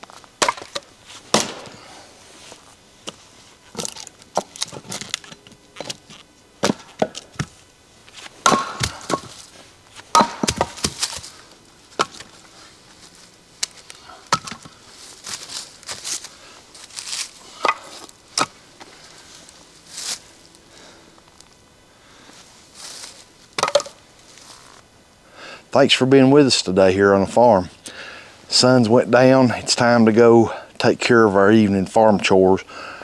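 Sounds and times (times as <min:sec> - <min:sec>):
maul splitting wood: 0:00.1 - 0:02.1, 0:03.1 - 0:07.6, 0:08.3 - 0:12.3, 0:13.6 - 0:18.6, 0:23.6 - 0:24.0.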